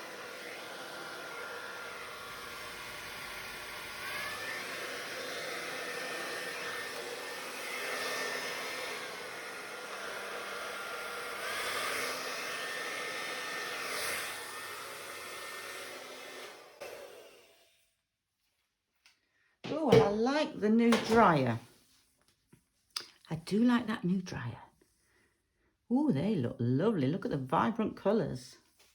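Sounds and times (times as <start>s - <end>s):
hairdryer blowing: 0.0s - 17.8s, 19.7s - 21.6s.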